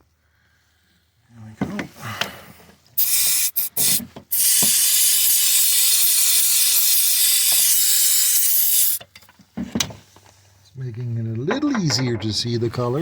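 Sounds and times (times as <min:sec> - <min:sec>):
aerosol spray can hissing: 0:03.0 - 0:09.0.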